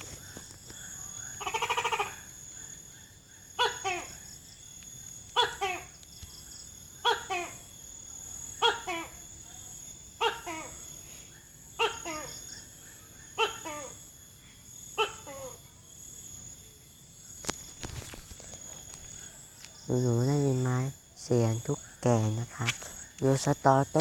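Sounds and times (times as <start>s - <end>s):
gecko calling: 0.0s - 15.7s
insects droning: 0.0s - 24.0s.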